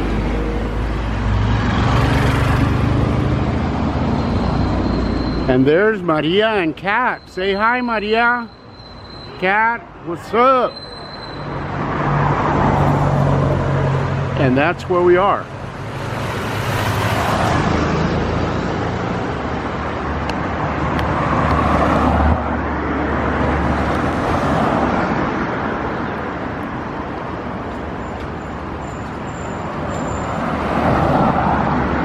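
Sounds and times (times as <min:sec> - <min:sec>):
vehicles passing: 0:00.0 - 0:32.0.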